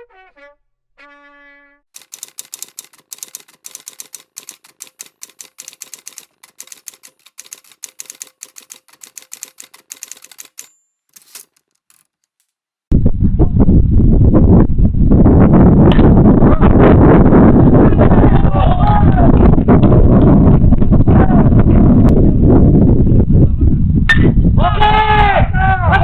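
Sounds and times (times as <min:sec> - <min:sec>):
typewriter bell ding: 0:02.0 - 0:12.4
typewriter key clicks: 0:02.0 - 0:12.5.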